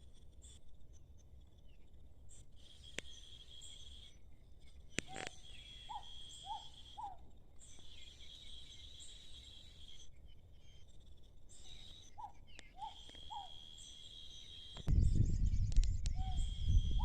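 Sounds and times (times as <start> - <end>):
bird chirping: 0.0 - 17.0
insects trilling: 0.0 - 17.0
sharp clicks: 2.7 - 3.3, 4.9 - 5.6, 11.8 - 13.4, 15.6 - 16.3.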